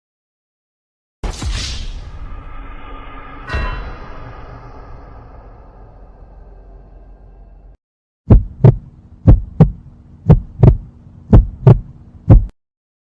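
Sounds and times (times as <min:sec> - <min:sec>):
faint steady hum: 0:08.3 - 0:12.5
heartbeat thumps: 0:08.3 - 0:12.6.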